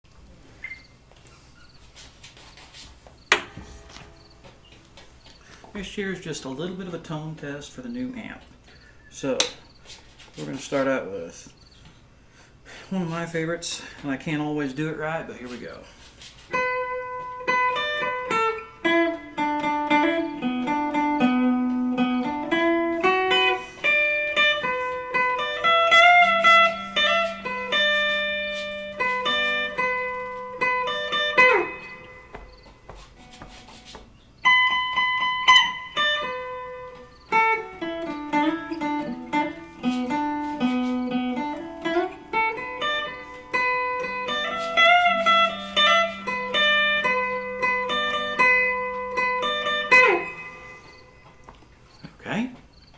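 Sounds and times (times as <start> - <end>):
clean electric guitar melody: 3.4 - 5.1, 16.5 - 51.7.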